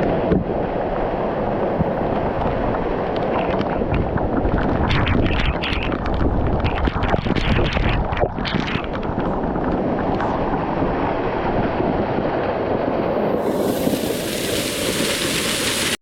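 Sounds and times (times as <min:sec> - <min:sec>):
wind buffeting microphone: 0:00.0 - 0:15.1
water rushing: 0:00.0 - 0:16.0
splashy crackles: 0:01.8 - 0:10.5, 0:13.4 - 0:16.0.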